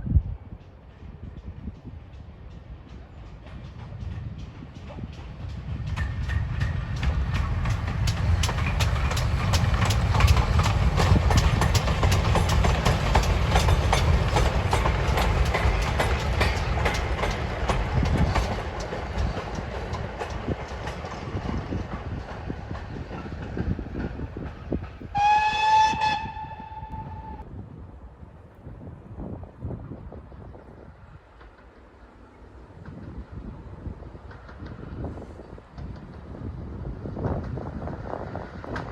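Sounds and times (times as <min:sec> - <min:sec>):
steam train wheels clattering: 0:00.3 - 0:27.4, 0:30.4 - 0:38.9
steam whistle blast: 0:25.1 - 0:27.4.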